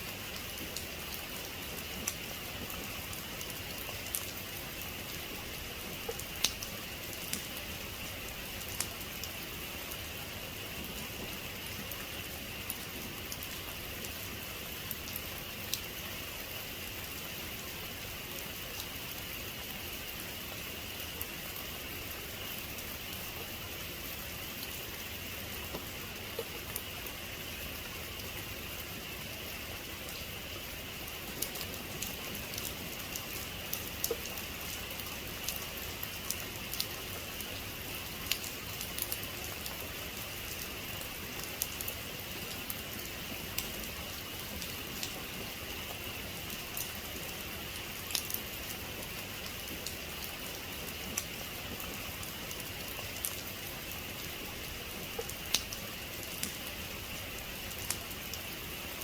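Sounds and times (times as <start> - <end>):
steady rainfall: 0.0 - 59.0
raindrops tapping close by: 6.0 - 7.6, 31.0 - 47.0, 47.8 - 58.5.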